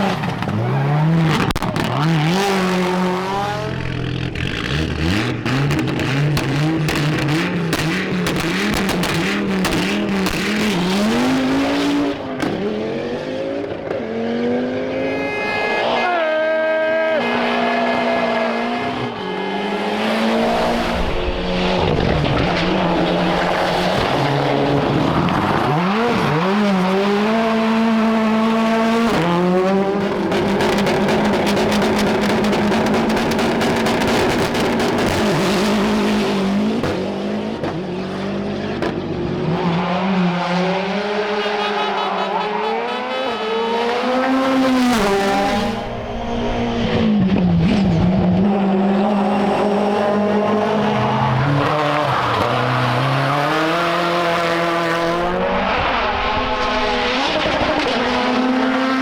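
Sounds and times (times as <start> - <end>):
rally car engine revving: 0.0 - 59.0.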